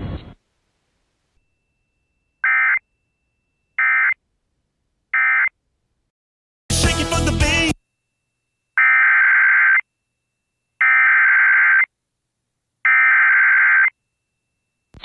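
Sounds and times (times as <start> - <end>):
digital data squawk tones: 2.4 - 2.8.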